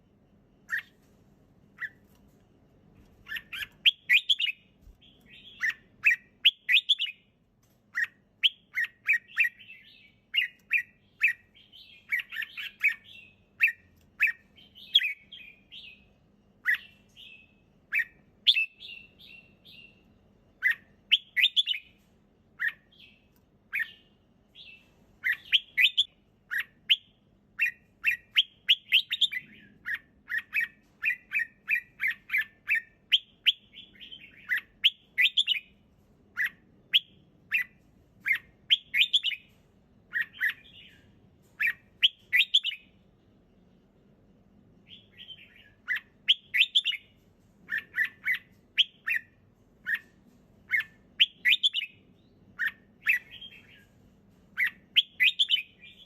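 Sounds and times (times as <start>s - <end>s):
bird singing chirpy phrases: 3.2s - 7.3s, 7.9s - 20.0s.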